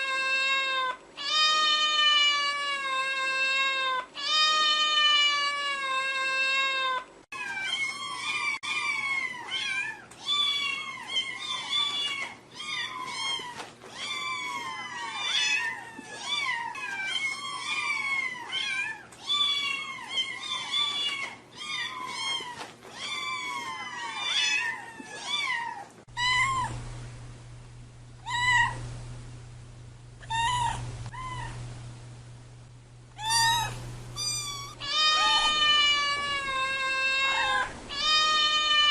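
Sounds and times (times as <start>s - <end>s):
cats meowing: 0.0s - 26.8s, 28.2s - 28.8s, 30.2s - 31.6s, 33.2s - 38.9s
steady low hum: 26.1s - 38.7s.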